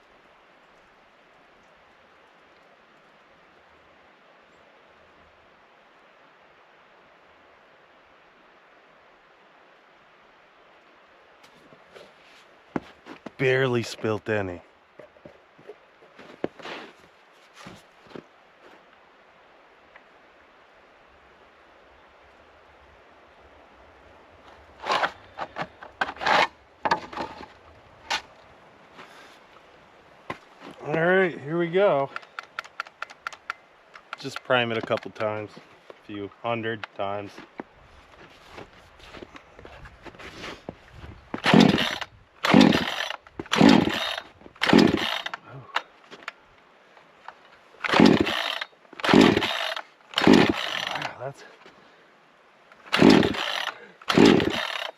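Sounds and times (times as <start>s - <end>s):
chainsaw engine cranking: 24.8s - 27.5s, 32.1s - 35.3s, 41.4s - 45.8s, 47.3s - 51.2s, 52.8s - 54.9s
objects scraping and rubbing: 24.8s - 28.3s.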